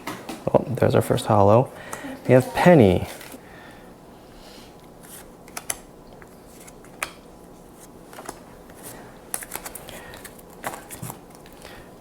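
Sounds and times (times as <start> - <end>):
trading cards clicking and rustling: 5.0 - 7.2, 7.8 - 11.7.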